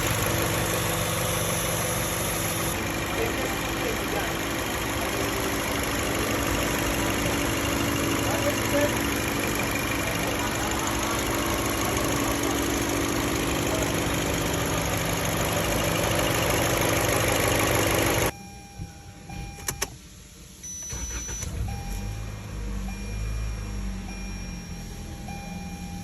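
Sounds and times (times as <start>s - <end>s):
car engine running: 0.0s - 18.3s
short high beep: 20.7s - 22.3s.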